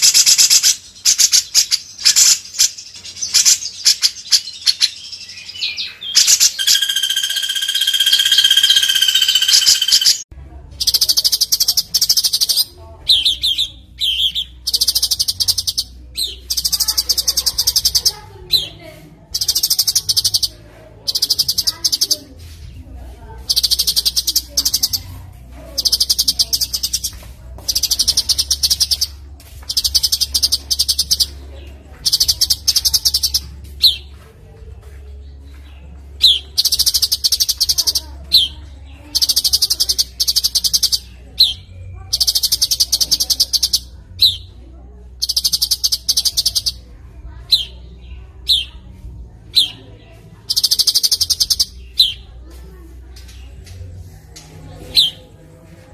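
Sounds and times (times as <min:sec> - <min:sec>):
bird chip notes: 0:00.0 - 0:10.2
songbird buzzy trills: 0:00.0 - 0:31.4, 0:45.2 - 0:48.8, 0:49.5 - 0:52.3.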